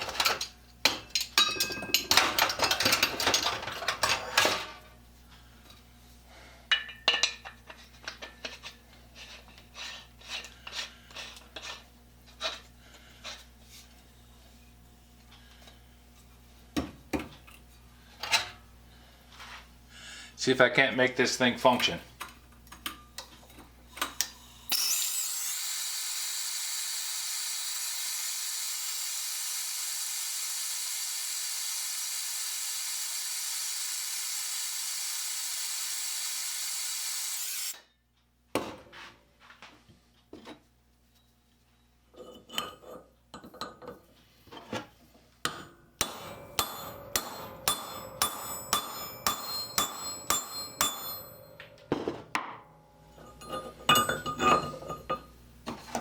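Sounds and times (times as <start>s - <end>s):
power tool whirring: 24.7s - 37.8s
hammer tapping on metal: 45.5s - 52.7s.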